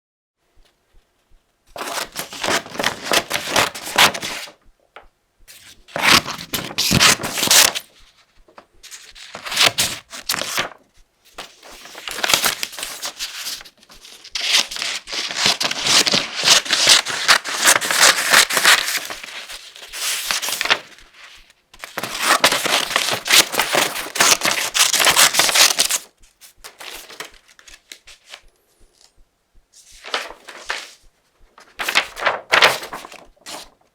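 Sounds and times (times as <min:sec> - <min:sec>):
scissors snipping paper: 0:01.8 - 0:04.5, 0:05.9 - 0:08.0, 0:08.9 - 0:10.7, 0:11.4 - 0:21.0, 0:21.8 - 0:27.3.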